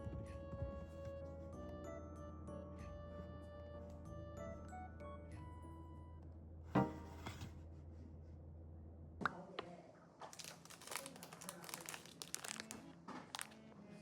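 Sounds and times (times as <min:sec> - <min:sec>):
packaging crinkling and tearing: 0:10.3 - 0:13.6.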